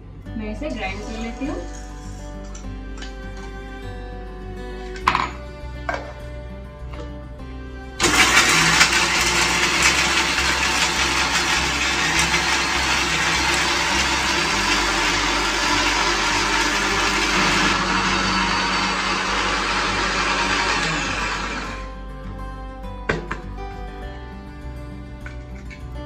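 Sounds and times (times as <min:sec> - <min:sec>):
background music: 0:00.0 - 0:26.0
electric grinder grinding spices: 0:00.9 - 0:03.6, 0:08.0 - 0:21.9.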